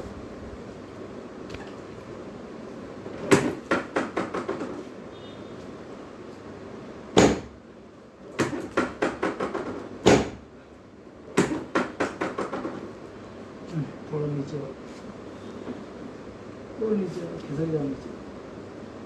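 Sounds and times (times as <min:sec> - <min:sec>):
sharp knocks: 0:03.2 - 0:04.9, 0:07.2 - 0:07.6, 0:08.4 - 0:10.4, 0:11.4 - 0:12.9.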